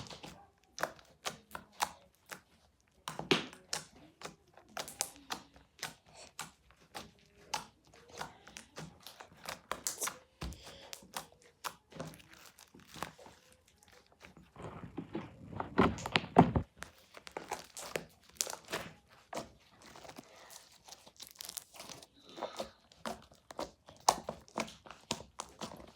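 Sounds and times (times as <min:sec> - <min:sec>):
slime crackling and popping: 0:00.0 - 0:14.4, 0:16.0 - 0:25.9.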